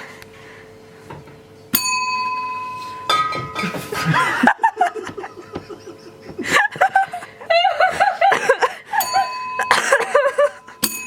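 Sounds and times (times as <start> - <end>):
service bell ringing: 1.7 - 4.0, 9.0 - 11.0.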